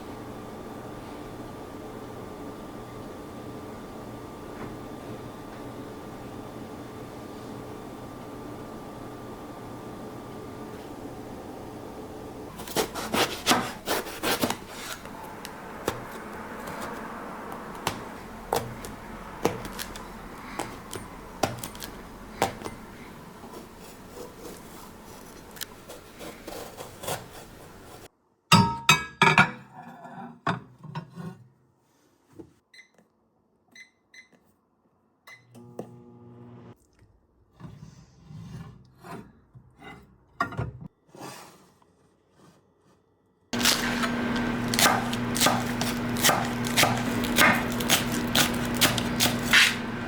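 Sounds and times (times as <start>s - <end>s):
background hum: 0.0s - 28.1s, 43.6s - 50.0s.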